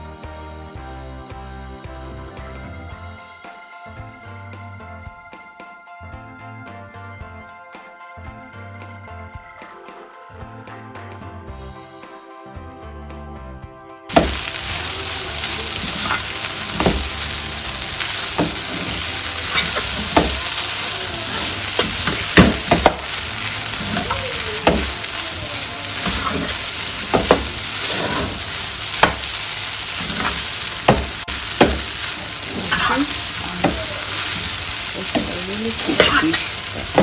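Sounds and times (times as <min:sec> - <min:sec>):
food sizzling in a pan: 0:14.1 - 0:37.0
utensil stirring and scraping: 0:14.2 - 0:37.0
utensil knocking against pan: 0:26.0 - 0:29.4, 0:30.0 - 0:33.8.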